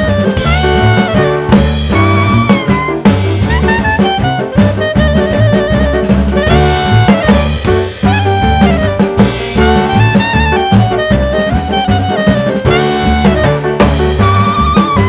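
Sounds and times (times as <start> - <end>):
drums: 0.0 - 15.0
horn melody: 0.0 - 15.0
upbeat jazz music: 0.0 - 15.0
walking bass: 0.0 - 15.0.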